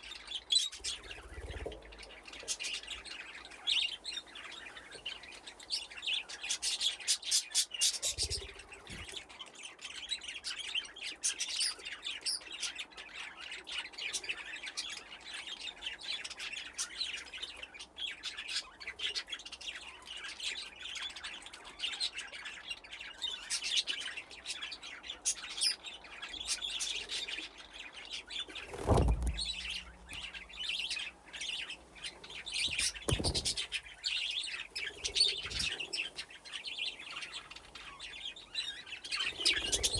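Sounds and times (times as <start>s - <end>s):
budgies chirping and chattering: 0.0s - 39.9s
dull thumps: 28.7s - 30.5s, 32.6s - 33.8s.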